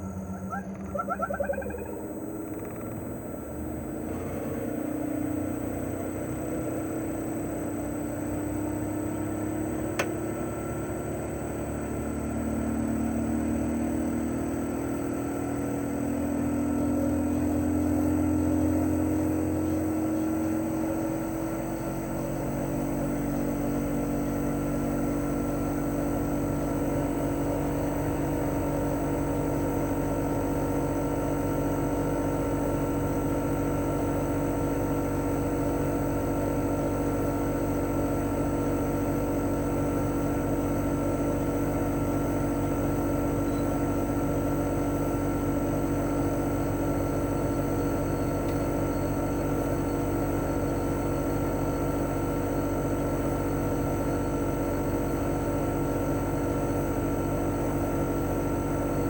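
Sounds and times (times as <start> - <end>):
whining tones: 0.0 - 6.2
air conditioner unit humming: 0.0 - 59.0.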